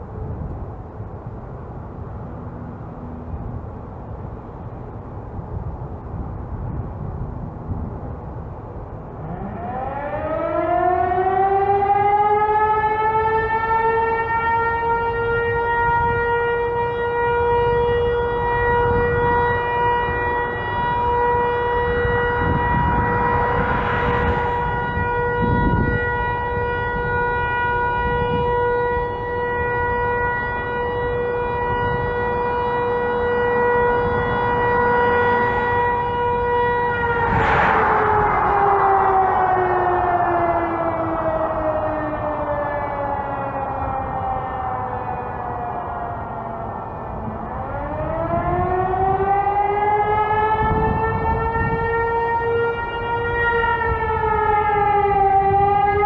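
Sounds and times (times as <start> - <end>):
warning siren wailing: 1.9 - 5.8, 8.8 - 56.0.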